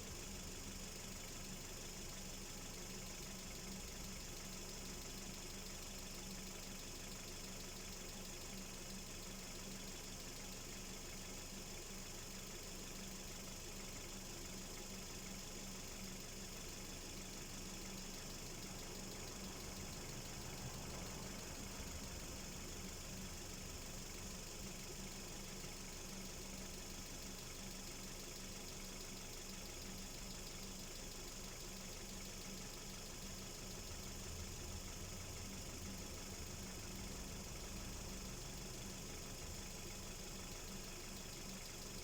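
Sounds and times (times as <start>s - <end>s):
car engine idling: 12.0s - 42.0s.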